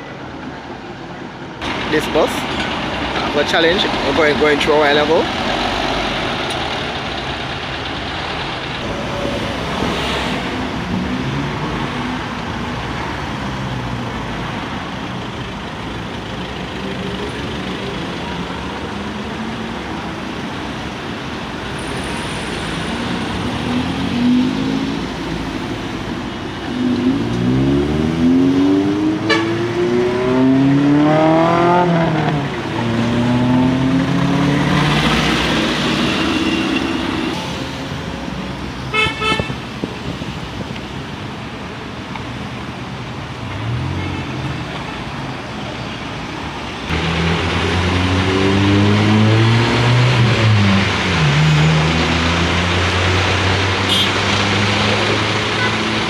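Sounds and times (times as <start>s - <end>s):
road traffic passing: 0.0s - 56.0s
vehicle engine accelerating: 22.1s - 38.6s, 46.9s - 56.0s.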